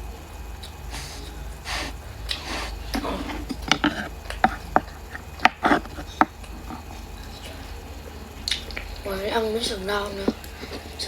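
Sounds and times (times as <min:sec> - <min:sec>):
chewing: 0:00.6 - 0:07.8, 0:10.0 - 0:11.0
utensils tapping: 0:01.8 - 0:06.9, 0:10.0 - 0:11.0.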